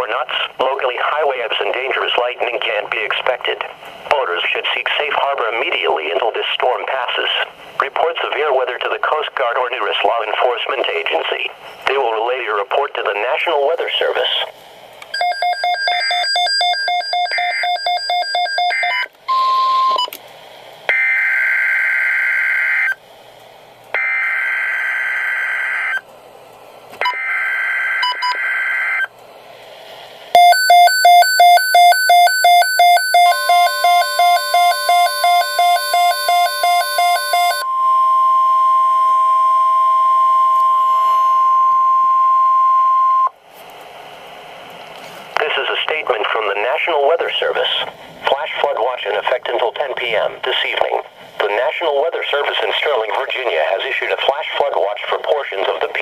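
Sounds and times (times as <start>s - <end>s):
steady warning alarm tone: 15.1s - 20.0s, 24.0s - 26.0s, 30.4s - 43.3s
fast beeping alarm: 15.2s - 20.0s, 30.4s - 40.8s
rapid beeping: 30.4s - 37.7s.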